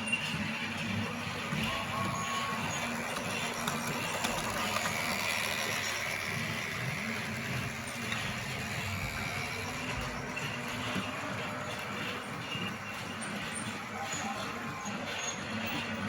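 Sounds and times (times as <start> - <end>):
clicks from wheels and track: 0.0 - 16.0
small electric motor whirring: 1.4 - 11.1.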